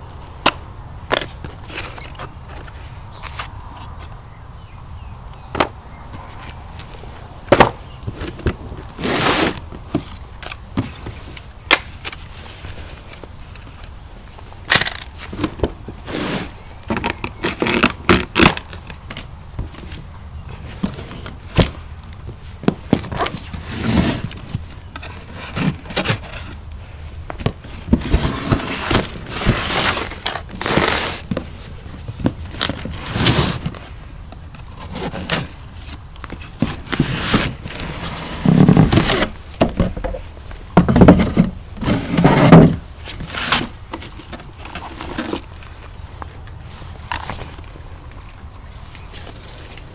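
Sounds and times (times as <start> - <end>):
packaging scraping and rustling: 1.2 - 4.1, 8.1 - 14.0, 14.7 - 22.0, 22.6 - 26.6, 27.4 - 40.3, 40.9 - 46.0.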